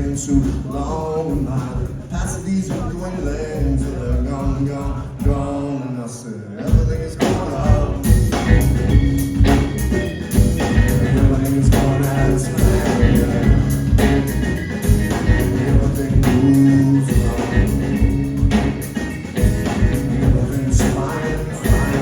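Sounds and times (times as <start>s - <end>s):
drum kit beat: 0.0s - 5.6s, 6.7s - 22.0s
bass line: 0.0s - 5.7s, 6.7s - 22.0s
guitar: 0.0s - 6.0s, 6.6s - 22.0s
rock band playing: 6.7s - 22.0s.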